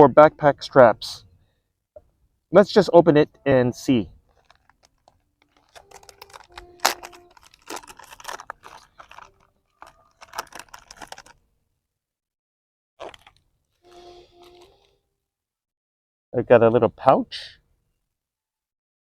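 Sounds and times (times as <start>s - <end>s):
short squeaks: 4.2s - 11.3s, 13.0s - 15.0s
package crinkling and tearing: 4.3s - 11.4s, 13.0s - 15.0s.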